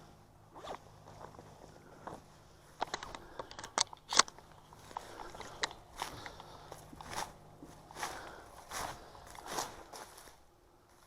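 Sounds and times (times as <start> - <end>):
footsteps crunching dry vegetation: 0.0 - 3.4, 4.0 - 11.0
sharp snaps and clicks: 2.8 - 7.1.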